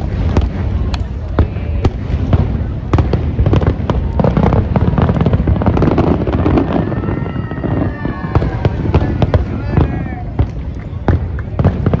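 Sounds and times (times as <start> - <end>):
fireworks bangs and crackles: 0.0 - 12.0
firework whistling glides: 3.4 - 12.0.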